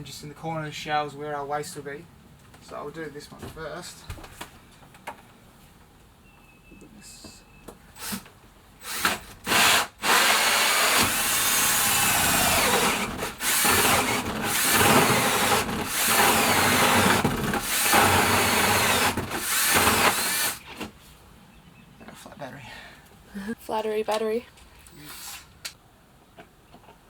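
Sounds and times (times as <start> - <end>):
power drill running: 8.0 - 20.7.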